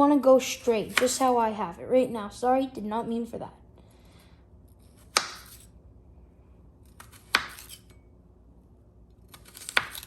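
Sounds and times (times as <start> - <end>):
knife chopping onion: 0.6 - 1.4, 5.0 - 5.7, 6.8 - 7.9, 9.3 - 10.0.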